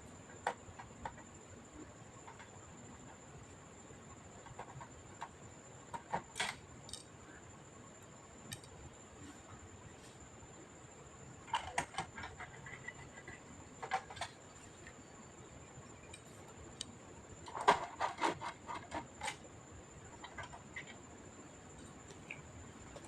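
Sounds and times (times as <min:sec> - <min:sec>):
faint high-pitched whine: 0:00.0 - 0:23.0
small parts clicking and tapping: 0:05.9 - 0:07.1, 0:08.5 - 0:08.8, 0:16.0 - 0:19.4.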